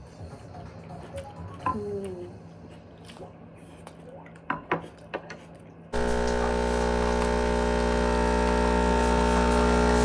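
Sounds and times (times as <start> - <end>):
appliance electrical hum: 6.0 - 10.0
appliance switch: 6.0 - 10.0.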